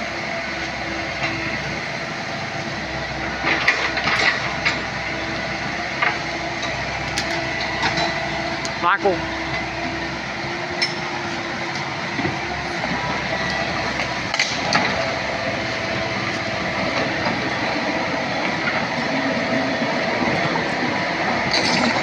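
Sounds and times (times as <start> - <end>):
excavator running with whine: 0.0 - 22.0
metal clanks: 21.5 - 22.0.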